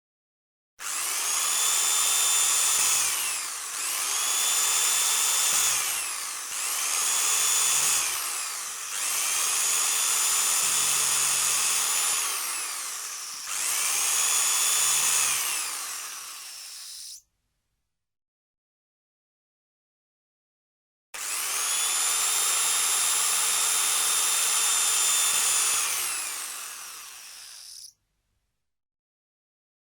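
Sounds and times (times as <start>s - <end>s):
power drill whine: 0.8s - 17.2s, 21.2s - 27.9s.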